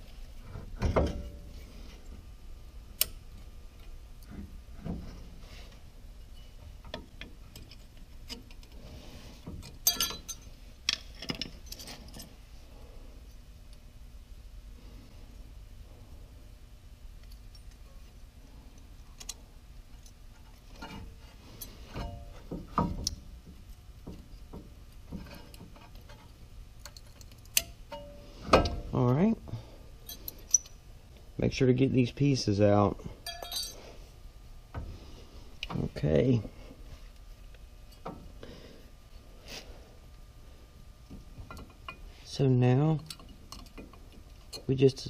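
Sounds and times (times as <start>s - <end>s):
metal brake clips clinking: 9.8s - 12.3s, 30.0s - 30.8s, 33.2s - 33.8s
metal clips clicking and tapping: 26.8s - 28.1s.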